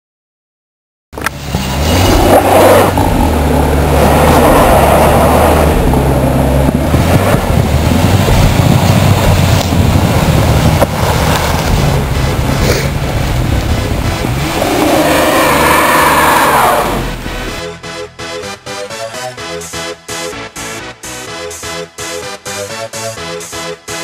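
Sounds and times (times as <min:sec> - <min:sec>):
vehicle engine running: 0:01.2 - 0:17.6
loud rushing noise: 0:01.3 - 0:17.6.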